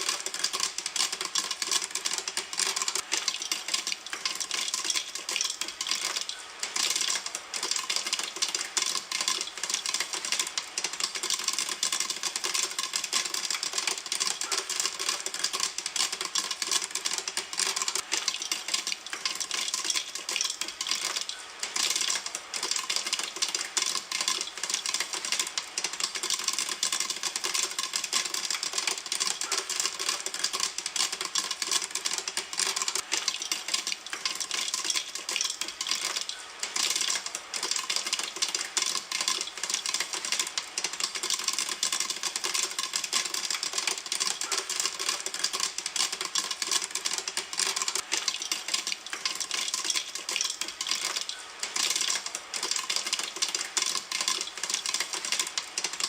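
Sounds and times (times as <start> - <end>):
popcorn popping in a pan: 0.0 - 56.0.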